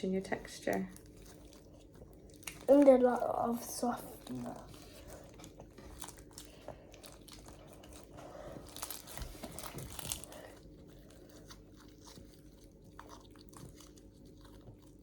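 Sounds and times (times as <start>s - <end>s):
slime squelching and crackling: 0.0s - 15.0s.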